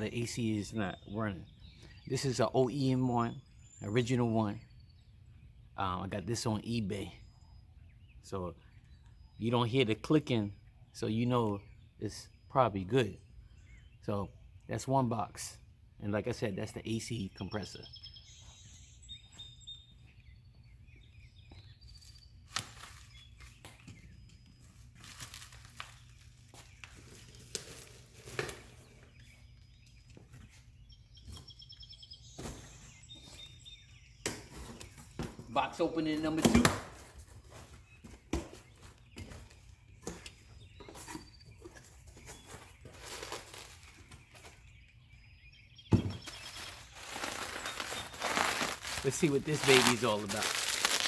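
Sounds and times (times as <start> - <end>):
birds chirping: 0.0 - 51.0.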